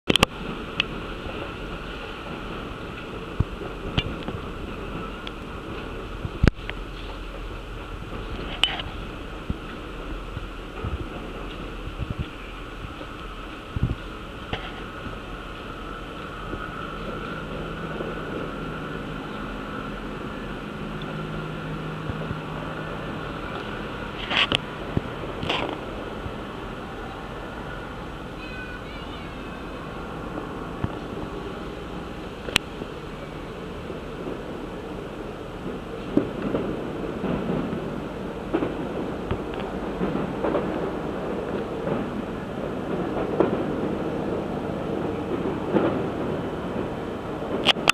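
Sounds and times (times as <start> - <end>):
fireworks display background din: 0.1 - 47.9.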